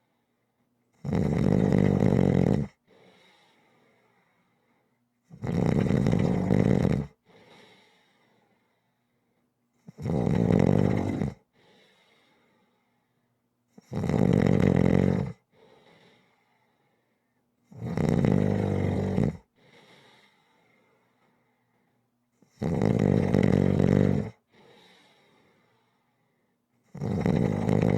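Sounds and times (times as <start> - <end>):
loud rattling snores: 1.0 - 2.8, 5.3 - 7.2, 9.9 - 11.4, 13.8 - 15.4, 17.7 - 19.5, 22.4 - 24.4, 26.9 - 27.9
faint breath out: 2.8 - 5.0, 7.2 - 9.3, 11.5 - 13.3, 15.5 - 17.4, 19.5 - 22.0, 24.5 - 26.6.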